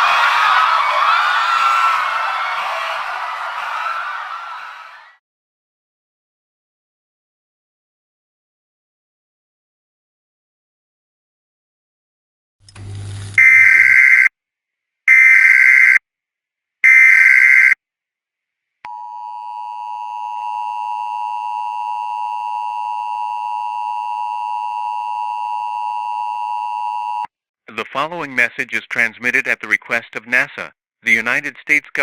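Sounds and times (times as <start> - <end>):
digital header tone bursts: 13.4 - 14.3
two-tone attention signal: 13.4 - 14.3.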